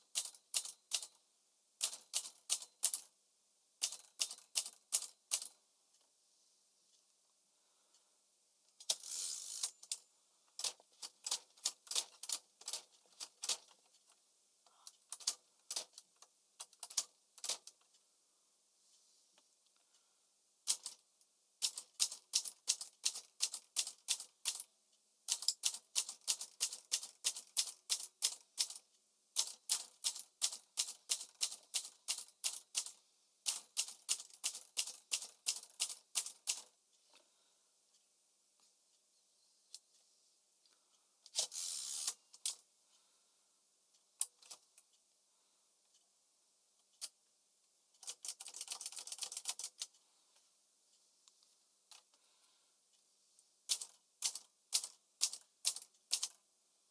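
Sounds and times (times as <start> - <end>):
typewriter mechanism rattle: 0.1 - 1.2, 1.8 - 3.1, 3.8 - 5.6, 8.8 - 10.0, 10.6 - 13.8, 15.1 - 16.0, 16.6 - 17.7, 20.7 - 21.0, 21.6 - 24.7, 25.3 - 28.8, 29.4 - 36.7, 41.3 - 42.6, 48.0 - 49.9, 53.7 - 56.4
typewriter rasping burst: 25.3 - 28.8, 29.4 - 36.6, 41.4 - 42.2, 48.0 - 49.8.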